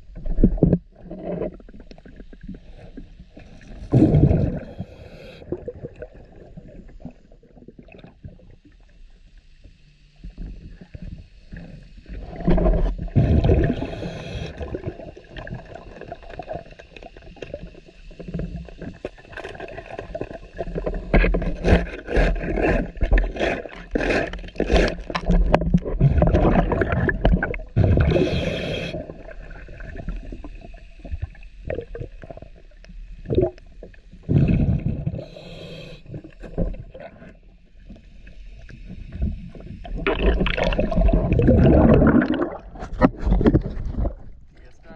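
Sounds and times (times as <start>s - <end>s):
exhaled bubbles gurgling: 0.0s - 9.0s, 10.3s - 44.8s
diver breathing through regulator: 3.9s - 5.8s, 11.5s - 15.0s, 27.8s - 29.4s, 34.2s - 36.7s.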